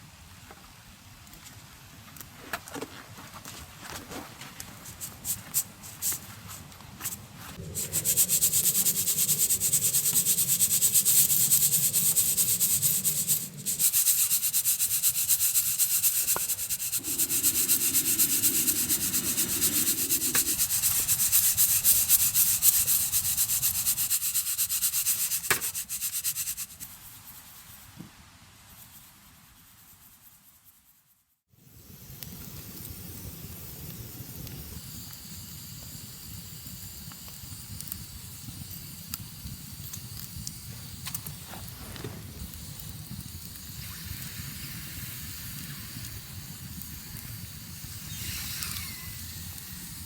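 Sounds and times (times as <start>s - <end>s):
hand rubbing on a surface: 5.0s - 27.8s.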